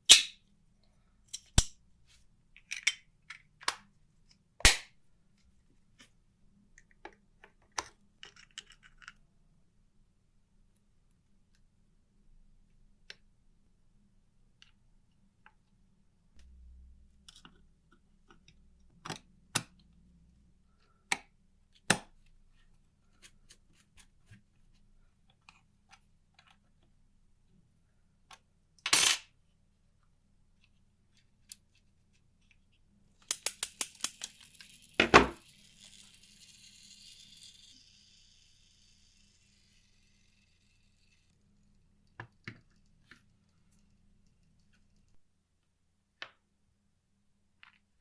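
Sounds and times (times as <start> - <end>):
metal parts clinking: 33.3 - 39.8.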